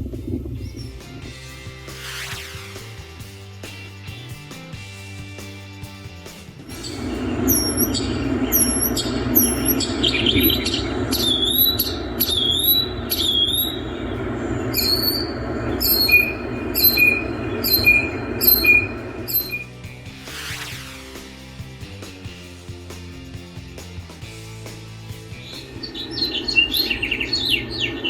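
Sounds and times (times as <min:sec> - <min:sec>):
low background rumble: 0:06.6 - 0:19.6
songbird short high calls: 0:06.8 - 0:19.6.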